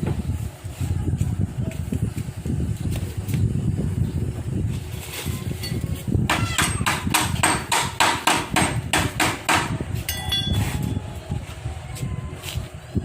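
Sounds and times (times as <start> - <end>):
hammer striking metal: 6.3 - 10.8
ringing clang: 10.1 - 11.0.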